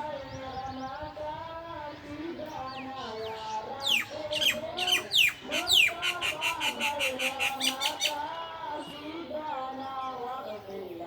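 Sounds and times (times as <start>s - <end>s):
bird high chirps: 2.5s - 11.0s.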